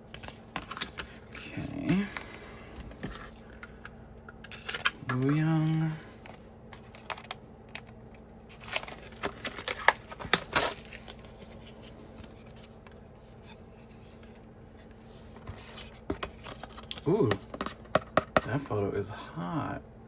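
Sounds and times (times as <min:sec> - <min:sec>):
packaging rustling: 0:00.0 - 0:03.8, 0:04.5 - 0:12.9, 0:15.1 - 0:18.1.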